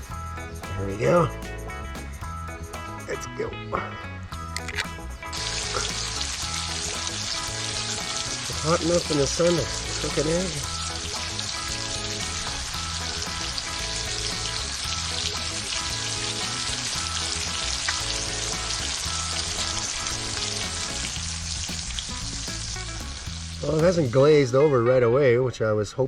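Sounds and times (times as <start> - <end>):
background music: 0.0 - 25.6.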